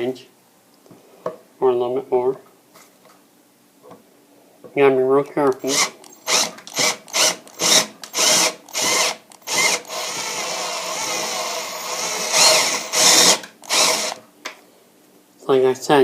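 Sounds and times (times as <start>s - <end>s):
electric drill boring into pipe: 5.6s - 14.2s.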